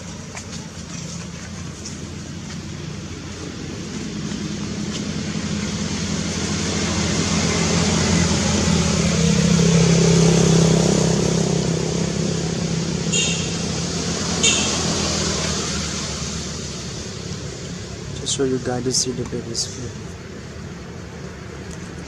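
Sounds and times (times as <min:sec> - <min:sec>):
vehicle driving past: 0:00.0 - 0:18.4.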